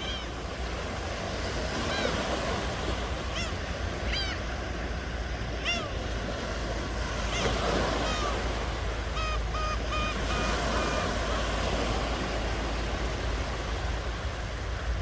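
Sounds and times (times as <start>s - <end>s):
bird calling: 0.0s - 0.8s, 1.7s - 4.7s, 5.5s - 6.4s, 7.0s - 12.9s
ocean surf washing ashore: 0.0s - 15.0s.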